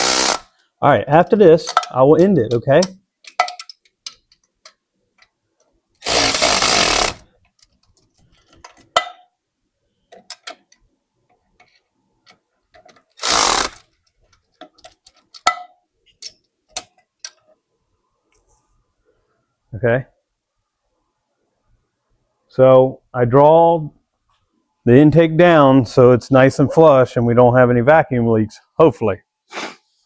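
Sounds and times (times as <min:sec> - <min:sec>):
power tool bursts: 0:00.0 - 0:00.5, 0:06.0 - 0:07.2, 0:13.2 - 0:13.8
ratchet clicking: 0:00.0 - 0:00.5, 0:06.0 - 0:07.2, 0:13.2 - 0:13.8.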